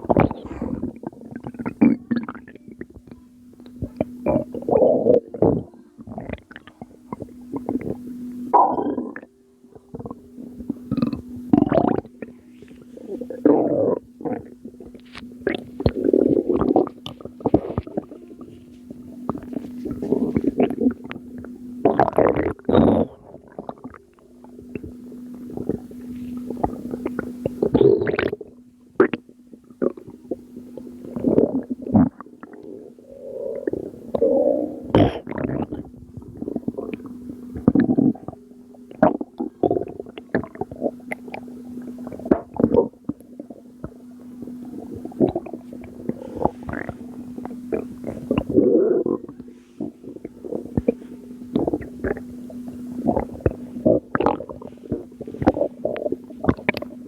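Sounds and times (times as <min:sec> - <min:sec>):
low hum: 0:00.0 - 0:57.0
belly gurgling: 0:44.7 - 0:57.0.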